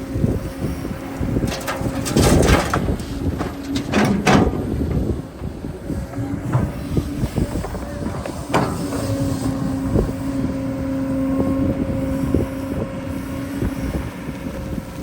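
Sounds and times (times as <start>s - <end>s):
excavator engine rumbling: 0.0s - 15.0s
bucket scraping and clanking: 1.2s - 9.5s.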